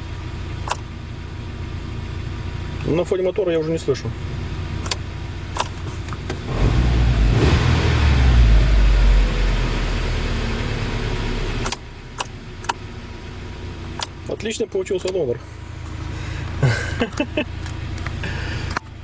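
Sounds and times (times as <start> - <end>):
car engine idling: 0.0 - 19.0
low rumble with falling whine: 0.0 - 19.0
sharp clicks: 11.6 - 12.8, 14.9 - 15.2.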